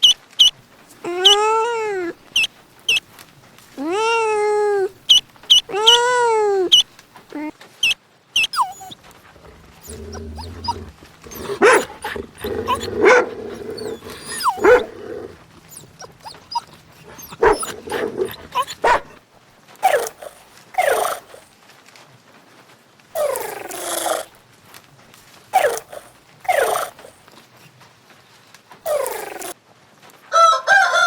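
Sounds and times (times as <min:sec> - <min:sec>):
dog whining and yelping: 0:00.0 - 0:03.1, 0:03.8 - 0:19.2, 0:19.8 - 0:21.5, 0:23.2 - 0:24.3, 0:25.6 - 0:27.3, 0:28.9 - 0:29.6
dog growling: 0:00.9 - 0:03.2, 0:03.8 - 0:07.5, 0:08.4 - 0:19.2, 0:19.8 - 0:21.5, 0:23.2 - 0:24.4, 0:25.6 - 0:27.4, 0:28.9 - 0:29.6.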